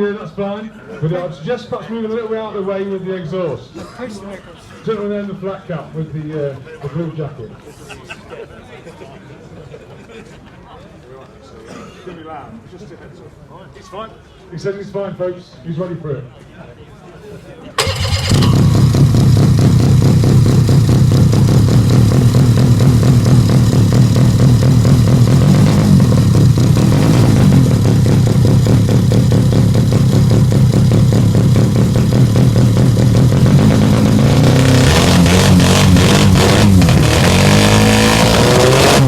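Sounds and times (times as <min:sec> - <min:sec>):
rotary motorcycle engine revving: 0:17.8 - 0:39.0.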